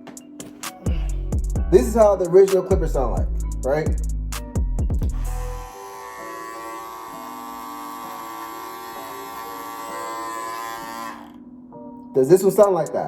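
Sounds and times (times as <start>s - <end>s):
hair clipper buzzing: 5.1s - 11.5s.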